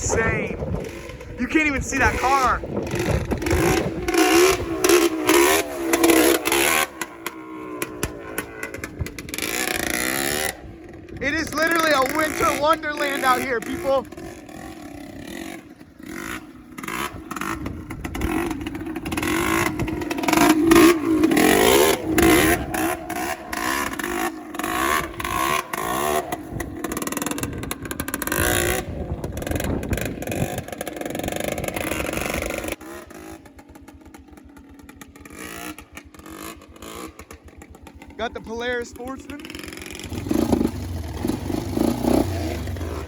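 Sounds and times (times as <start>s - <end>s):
engine crackles: 0.0s - 43.0s
motorcycle engine revving: 0.0s - 43.0s.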